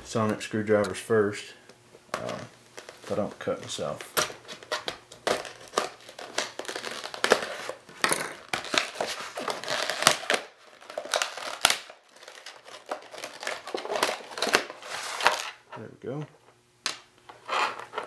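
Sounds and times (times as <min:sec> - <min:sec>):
plastic packaging crinkling: 0:02.8 - 0:15.6.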